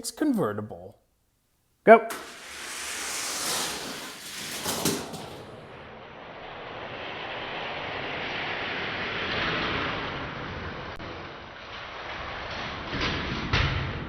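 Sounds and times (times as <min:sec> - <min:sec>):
toy cars rolling down plastic track: 0:02.1 - 0:05.8.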